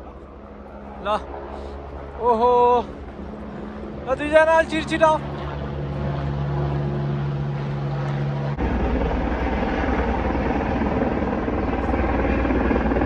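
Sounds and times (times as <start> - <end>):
engine drone: 0.0 - 13.0.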